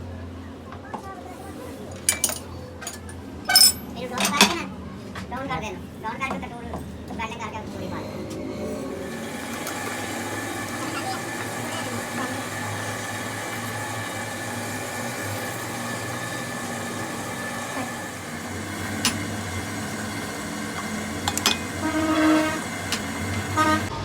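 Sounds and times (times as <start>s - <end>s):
workshop machine motor hum: 7.7s - 24.0s.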